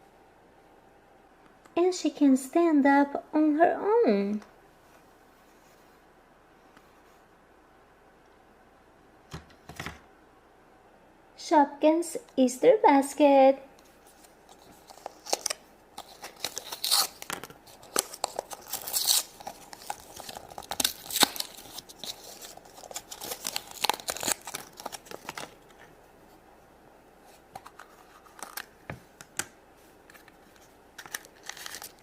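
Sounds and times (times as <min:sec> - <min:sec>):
packaging tearing and crinkling: 0:14.5 - 0:25.7, 0:27.6 - 0:28.7, 0:31.0 - 0:32.0.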